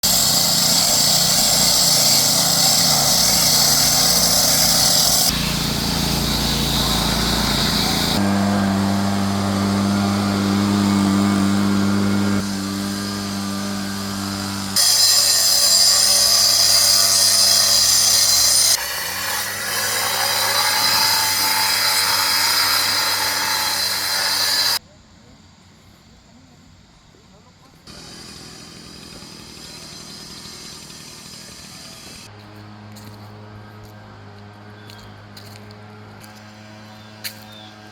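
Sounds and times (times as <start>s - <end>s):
construction machinery engine running: 0.0s - 14.8s, 27.9s - 37.9s.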